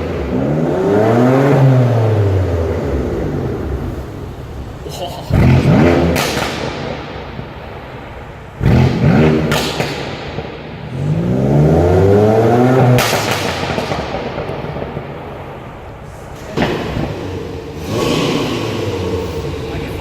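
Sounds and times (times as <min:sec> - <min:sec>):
car engine revving: 0:00.0 - 0:20.0
exhaust crackles and pops: 0:03.4 - 0:11.4, 0:12.4 - 0:20.0.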